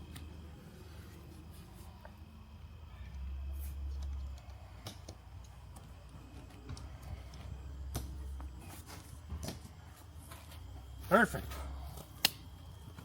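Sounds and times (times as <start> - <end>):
plastic clips snapping onto poles: 12.2 - 12.4.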